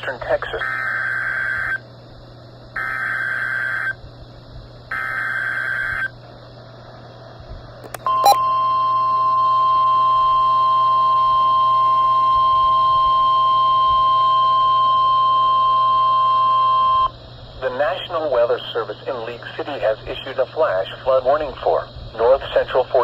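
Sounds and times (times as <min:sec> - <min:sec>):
steady warning alarm tone: 0:00.5 - 0:01.8, 0:02.8 - 0:04.0, 0:04.9 - 0:06.2, 0:07.9 - 0:17.2
click: 0:07.8 - 0:08.1.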